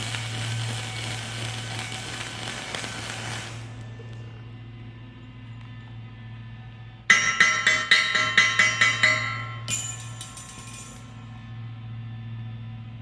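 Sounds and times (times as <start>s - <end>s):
steady electrical hum: 0.0s - 12.9s
hammer striking steel: 7.1s - 11.2s.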